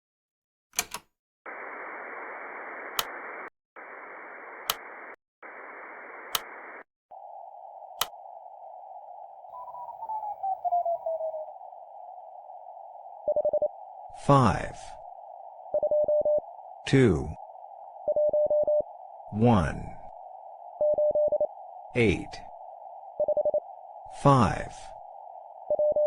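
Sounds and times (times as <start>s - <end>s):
sharp clicks: 0.8s - 1.1s, 2.9s - 3.2s, 4.6s - 4.9s, 6.2s - 6.6s, 8.0s - 8.2s
radio static hiss: 1.5s - 10.2s, 10.8s - 26.0s
whistling tone sliding down: 9.3s - 12.4s
morse code tone: 18.1s - 18.9s, 20.8s - 21.5s.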